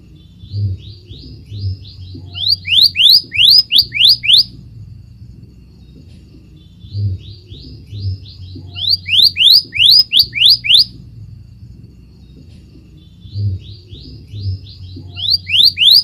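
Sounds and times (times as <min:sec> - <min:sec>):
bird whistling song: 0:00.0 - 0:04.6, 0:06.6 - 0:11.0, 0:12.2 - 0:16.0.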